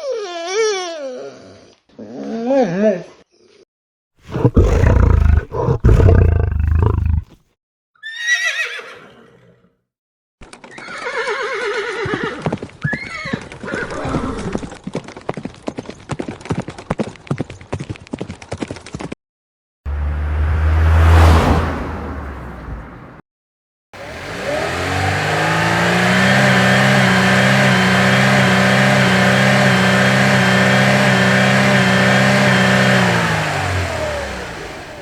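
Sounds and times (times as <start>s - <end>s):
horse whinnying: 8.0s - 9.3s, 10.8s - 14.7s
horse hooves clip-clopping: 12.3s - 13.7s, 14.7s - 19.1s.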